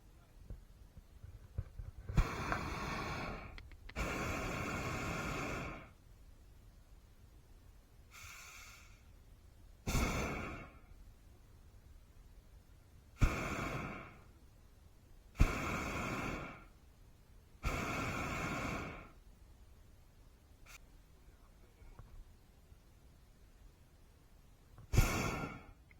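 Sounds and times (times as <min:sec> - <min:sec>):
propane burner blasts: 0:01.5 - 0:06.0, 0:08.1 - 0:09.1, 0:09.8 - 0:10.8, 0:13.2 - 0:14.3, 0:15.4 - 0:16.7, 0:17.6 - 0:19.2, 0:24.8 - 0:25.8.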